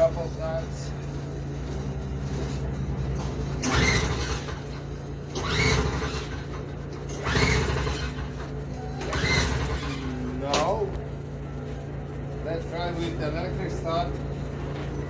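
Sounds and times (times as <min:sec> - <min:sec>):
steady low hum: 0:00.0 - 0:15.0
recoil starter pulls whirring: 0:01.6 - 0:11.0.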